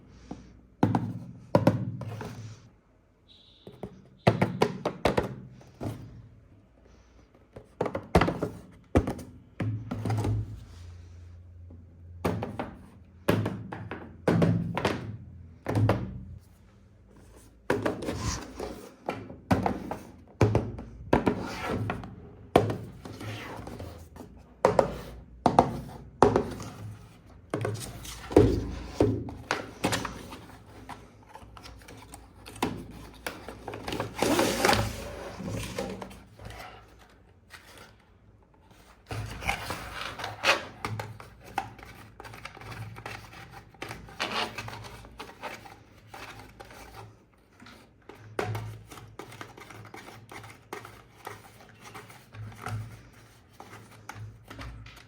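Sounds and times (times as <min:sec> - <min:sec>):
boxes and packaging knocking: 0:03.6 - 0:06.2.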